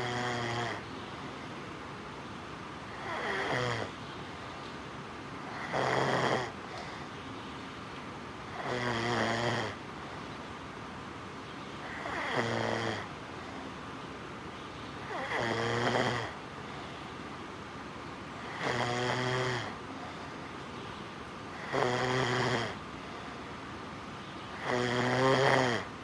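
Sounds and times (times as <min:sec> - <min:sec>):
man snoring: 0:00.0 - 0:00.8, 0:02.9 - 0:03.9, 0:05.5 - 0:06.5, 0:08.6 - 0:09.8, 0:11.8 - 0:13.1, 0:15.1 - 0:16.4, 0:18.4 - 0:19.8, 0:21.6 - 0:22.8, 0:24.6 - 0:25.9.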